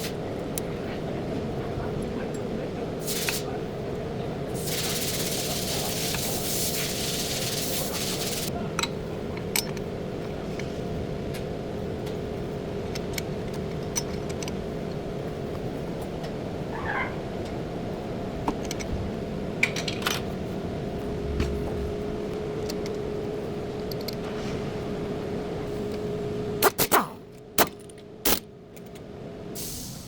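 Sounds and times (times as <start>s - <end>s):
low background hum: 0.0s - 30.0s
hissing spray: 3.0s - 3.5s, 4.6s - 8.5s, 29.6s - 30.0s.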